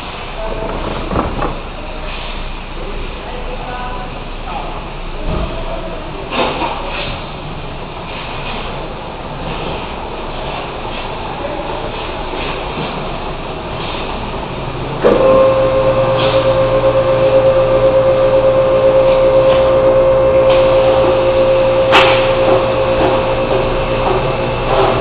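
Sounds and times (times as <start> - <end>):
low machine hum: 14.4 - 25.0
machine whining: 15.0 - 25.0.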